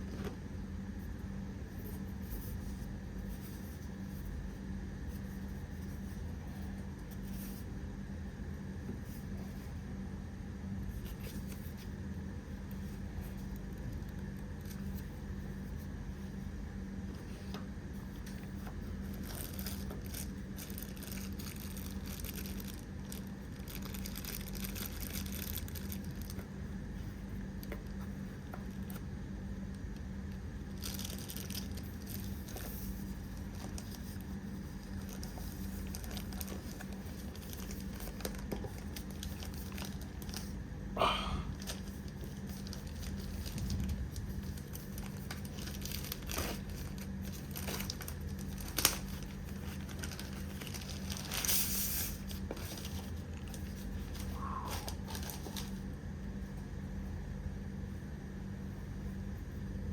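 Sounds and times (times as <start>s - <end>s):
packaging crinkling and rustling: 18.1s - 26.6s, 30.7s - 40.6s, 41.6s - 56.0s
low hum: 40.2s - 51.4s, 53.4s - 55.9s.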